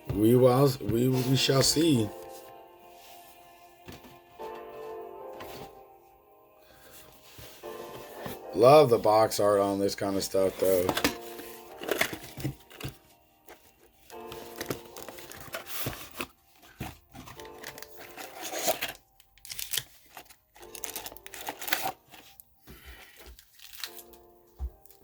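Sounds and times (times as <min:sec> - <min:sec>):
soft background music: 0:00.0 - 0:25.0
plastic wrapping tearing and crinkling: 0:14.1 - 0:22.4, 0:23.0 - 0:24.2.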